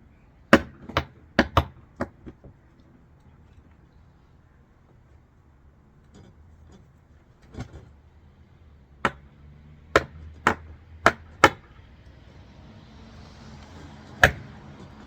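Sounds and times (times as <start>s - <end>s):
sharp knocks on hardware: 9.0s - 9.3s, 9.9s - 11.7s, 14.2s - 15.0s.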